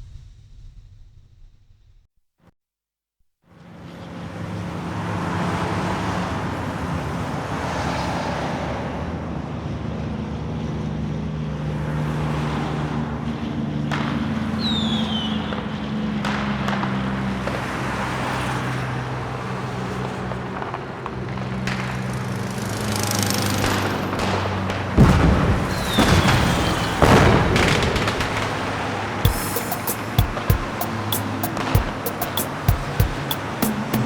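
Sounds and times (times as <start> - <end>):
road traffic noise: 3.5 - 34.0
high falling squeal: 25.6 - 27.8.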